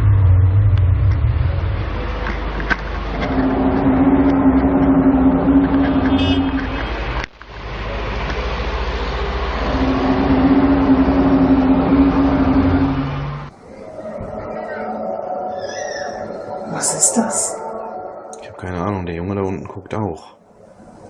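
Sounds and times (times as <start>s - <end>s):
low droning rumble: 0.0s - 20.2s.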